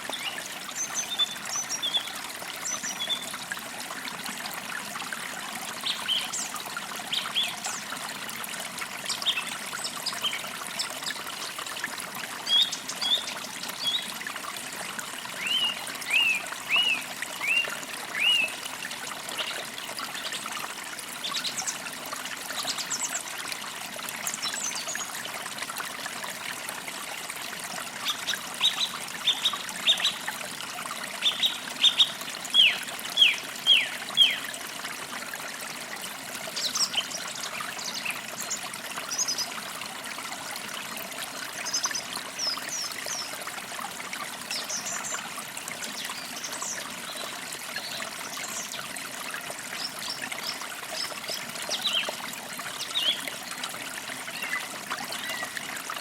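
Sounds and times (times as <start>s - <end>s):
creek trickling: 0.0s - 56.0s.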